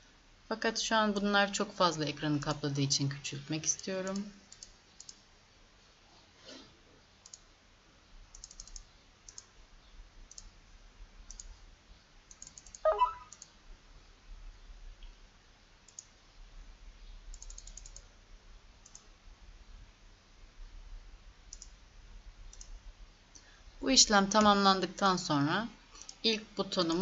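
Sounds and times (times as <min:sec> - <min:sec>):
computer mouse clicking: 0:04.1 - 0:05.2, 0:07.2 - 0:07.5, 0:08.3 - 0:09.5, 0:10.3 - 0:10.5, 0:11.3 - 0:11.5, 0:12.3 - 0:13.5, 0:15.9 - 0:16.1, 0:17.3 - 0:18.1, 0:18.8 - 0:19.1, 0:21.5 - 0:21.8, 0:22.5 - 0:22.8, 0:26.0 - 0:26.2.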